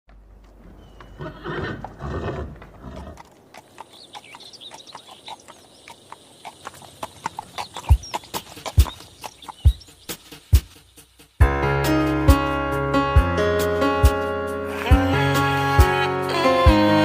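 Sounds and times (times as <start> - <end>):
hooves clip-clopping: 0.1 - 11.4
horse whinnying: 1.1 - 3.2
faint bird chirps: 3.6 - 11.3.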